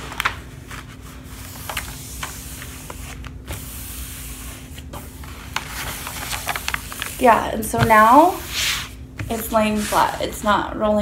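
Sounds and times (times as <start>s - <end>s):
rustling and crackling plastic film: 4.7s - 7.5s.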